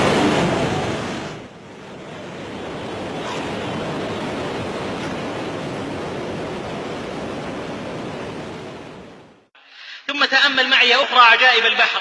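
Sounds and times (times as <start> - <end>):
sea waves breaking: 0.0 - 9.5.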